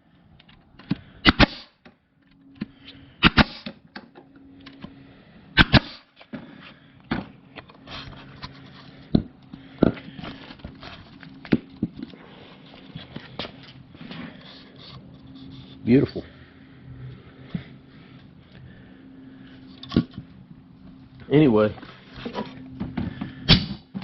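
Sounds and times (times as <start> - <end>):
faint steady hum: 0.0 - 24.0
staple gun firing into wood: 1.2 - 1.7, 3.2 - 3.7, 5.6 - 6.0.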